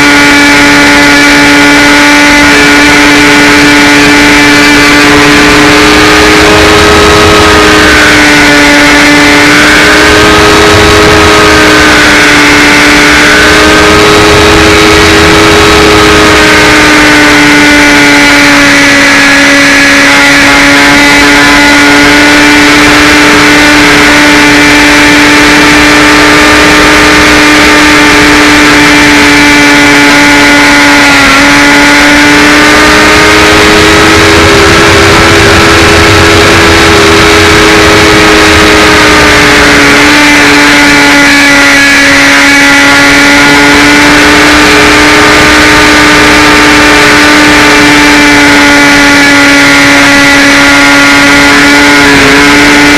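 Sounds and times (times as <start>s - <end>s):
electric motor and propeller whine: 0.0s - 52.9s
rushing noise: 0.0s - 52.9s.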